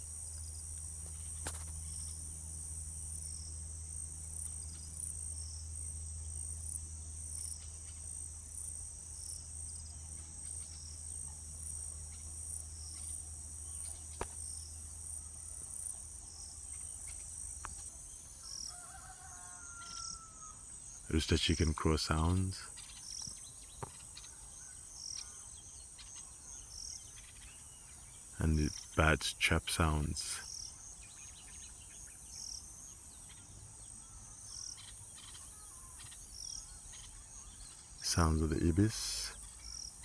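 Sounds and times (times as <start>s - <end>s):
low steady hum: 0.0s - 18.5s, 20.7s - 22.8s, 28.4s - 30.4s.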